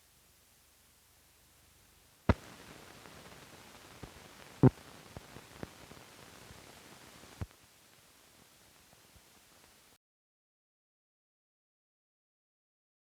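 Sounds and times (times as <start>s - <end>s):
film soundtrack hiss: 0.0s - 10.0s
film soundtrack pops and clicks: 2.3s - 7.6s.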